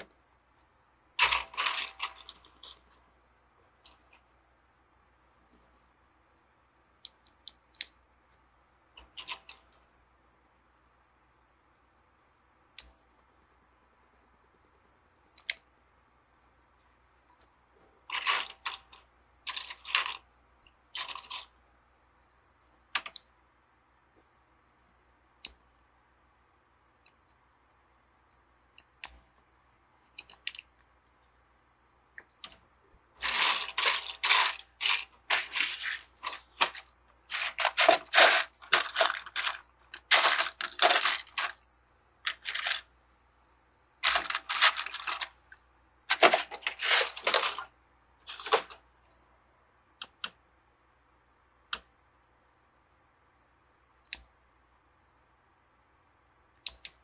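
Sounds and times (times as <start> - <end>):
plastic bricks clattering: 1.2 - 3.0, 18.1 - 20.2, 21.0 - 21.5, 33.2 - 41.6, 42.2 - 42.9, 44.0 - 45.5, 46.1 - 47.7, 48.3 - 48.8.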